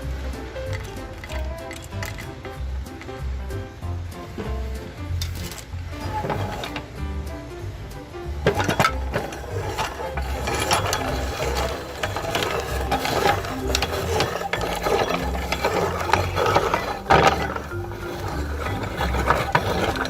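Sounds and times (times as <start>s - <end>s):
meat grinder crushing candy: 8.5s - 20.0s.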